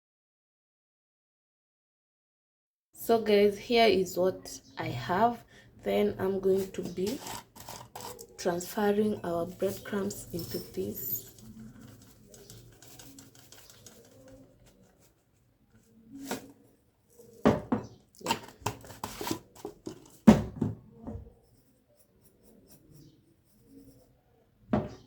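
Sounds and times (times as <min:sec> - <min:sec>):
containers knocking and tapping: 0:09.5 - 0:14.7, 0:17.4 - 0:21.2, 0:24.8 - 0:25.0.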